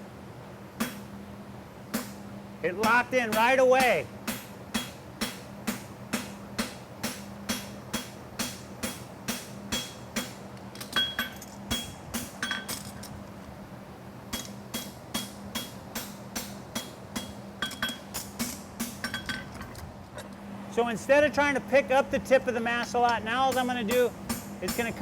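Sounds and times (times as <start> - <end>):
hammer ringing on anvil: 2.8 - 10.4, 11.0 - 12.8, 23.4 - 25.0.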